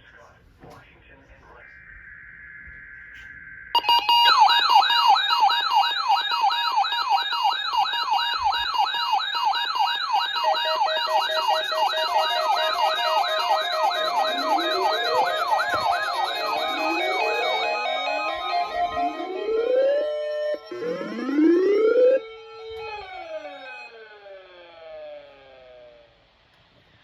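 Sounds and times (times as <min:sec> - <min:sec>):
data tones burst: 0:01.5 - 0:25.7
electronic siren warble: 0:01.7 - 0:26.2
synthesized rising glides: 0:10.8 - 0:26.1.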